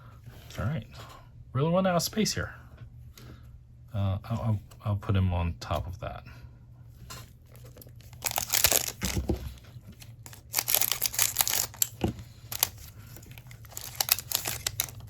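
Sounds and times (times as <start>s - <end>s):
card pack wrapper tearing: 7.5s - 15.0s
wrapper crinkling: 7.5s - 15.0s.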